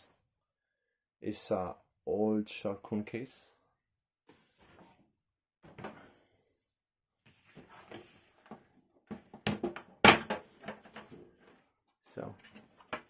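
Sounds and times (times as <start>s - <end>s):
knocks and clatters on pc case: 9.1s - 11.0s.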